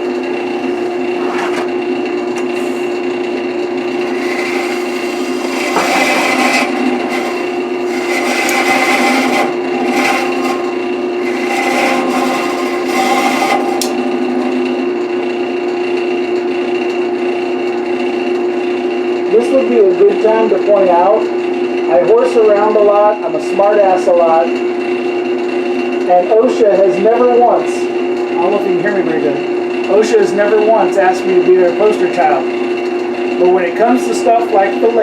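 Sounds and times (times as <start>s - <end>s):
turning tool scraping wood: 0.0s - 14.9s
wood lathe motor hum: 0.0s - 18.7s, 21.2s - 35.0s.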